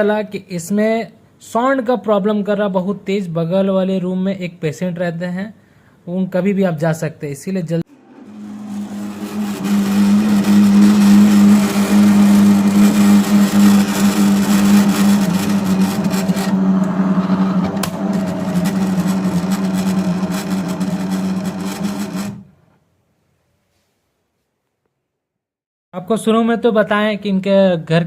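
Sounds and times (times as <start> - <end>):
drain pump motor humming: 7.9 - 22.5.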